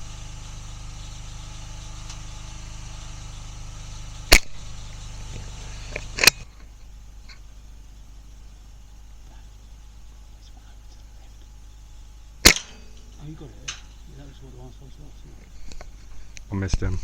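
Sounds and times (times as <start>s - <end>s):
steady low hum: 0.0s - 17.0s
air rifle cracks: 4.3s - 4.6s, 12.4s - 13.1s.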